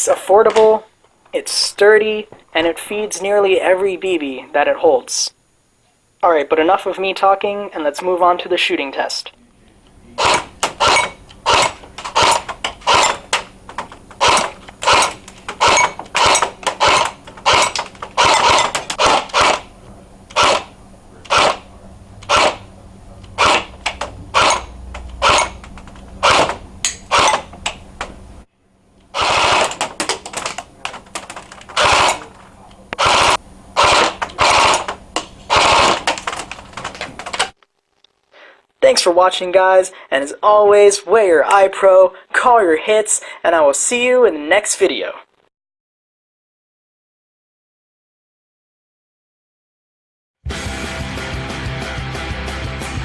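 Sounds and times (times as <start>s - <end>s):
airsoft rifle firing bursts: 14.2s - 19.7s, 23.4s - 23.7s, 29.2s - 30.0s, 31.8s - 32.4s, 33.0s - 34.9s, 35.5s - 36.4s.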